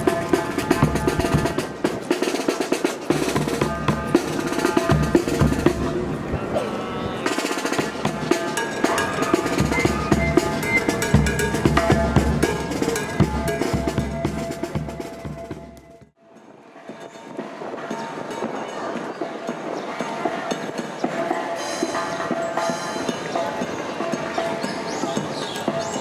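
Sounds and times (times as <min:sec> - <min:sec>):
snare and bass drums: 0:00.0 - 0:06.1, 0:07.2 - 0:16.1
held horn notes: 0:03.4 - 0:16.0.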